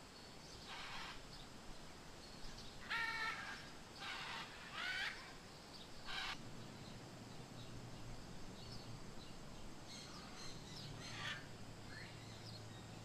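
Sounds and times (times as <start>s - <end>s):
faint background hiss: 0.0s - 13.0s
macaw squawks: 0.7s - 1.2s, 2.8s - 5.3s, 6.1s - 6.4s, 11.0s - 12.1s.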